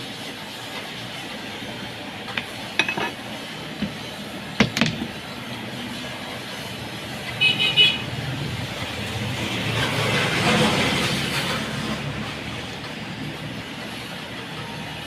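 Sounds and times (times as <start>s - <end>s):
metal parts clicking and knocking: 2.4s - 3.2s, 4.6s - 5.2s.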